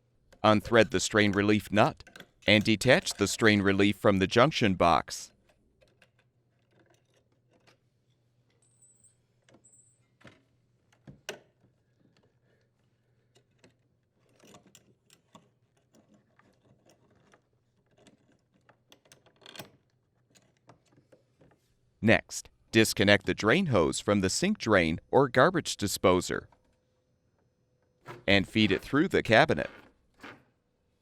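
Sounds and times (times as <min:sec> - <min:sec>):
small parts clicking and rattling: 0:05.4 - 0:21.6.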